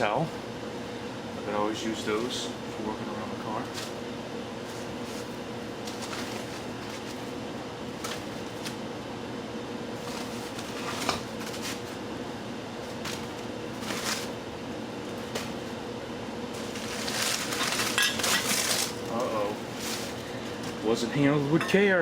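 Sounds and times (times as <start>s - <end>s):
room hum with faint tone: 0.0s - 22.0s
packing rustling in a box: 4.7s - 8.8s, 10.0s - 12.0s, 13.0s - 14.4s, 16.5s - 20.8s.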